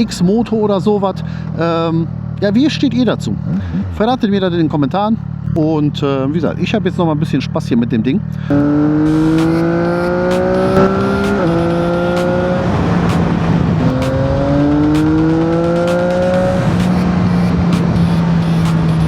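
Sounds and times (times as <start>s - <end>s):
motorcycle engine accelerating: 0.0s - 19.0s
steady rushing noise: 8.6s - 19.0s.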